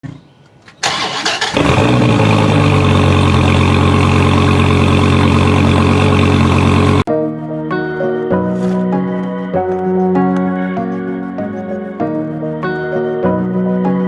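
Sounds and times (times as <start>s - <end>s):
truck engine cranking: 0.8s - 7.1s
truck engine idling: 1.4s - 7.1s.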